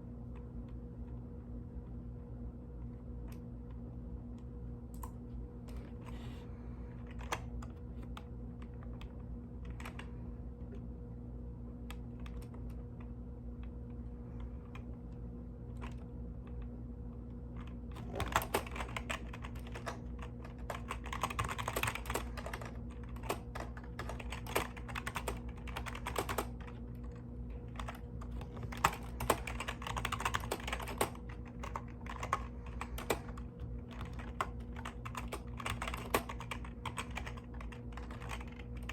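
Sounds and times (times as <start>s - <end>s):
steady low hum: 0.0s - 38.9s
mechanical keyboard typing: 17.6s - 38.9s.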